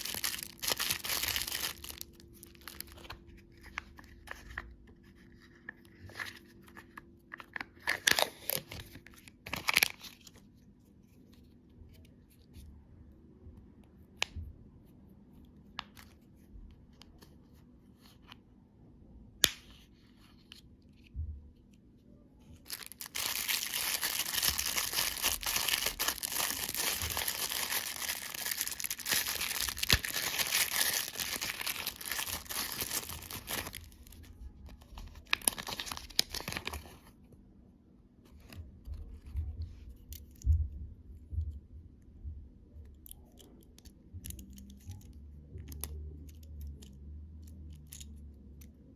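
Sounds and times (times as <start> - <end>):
wrapper crinkling and tearing: 0.0 - 4.4, 7.8 - 10.3, 22.6 - 37.0.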